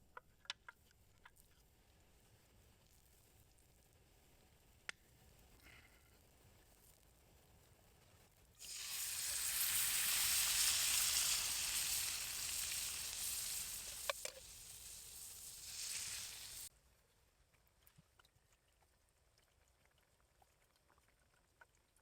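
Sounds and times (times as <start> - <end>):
steak sizzling in a pan: 8.6 - 16.7.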